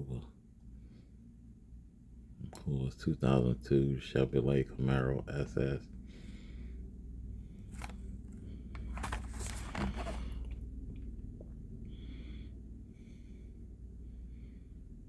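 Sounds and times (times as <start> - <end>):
low steady hum: 0.0 - 15.0
plastic packaging clicks and crinkles: 7.7 - 10.6.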